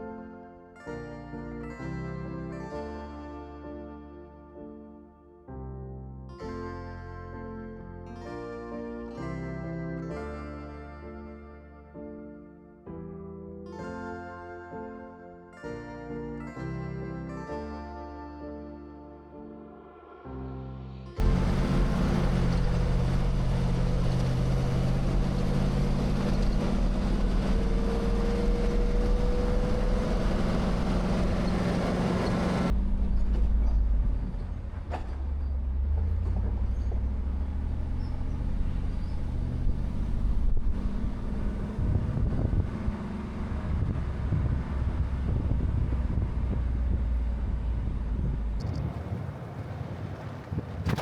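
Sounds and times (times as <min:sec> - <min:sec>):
car engine running: 0:21.2 - 0:48.8
road and tyre noise: 0:21.2 - 0:51.0.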